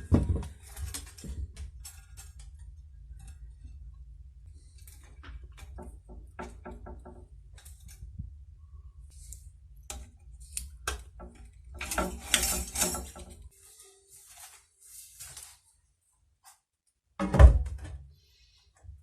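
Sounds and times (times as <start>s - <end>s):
metal clattering and scraping: 11.2s - 13.5s.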